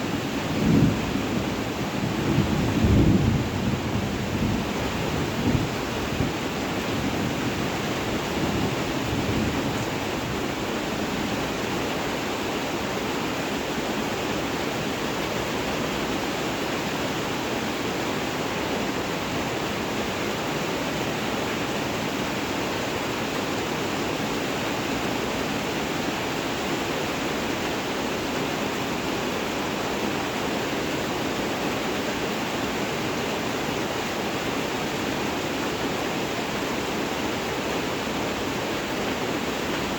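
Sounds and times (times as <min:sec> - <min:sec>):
steady rain: 0:00.0 - 0:39.9
low thunder rumble: 0:00.5 - 0:06.3.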